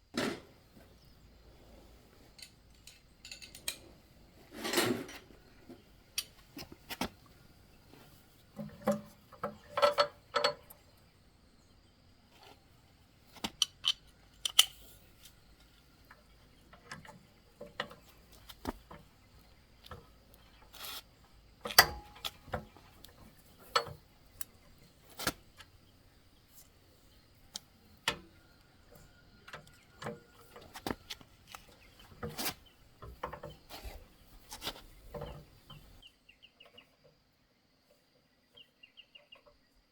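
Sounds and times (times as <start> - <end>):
metal tools clinking and scraping: 2.3 - 3.9, 8.6 - 10.8, 21.6 - 24.0.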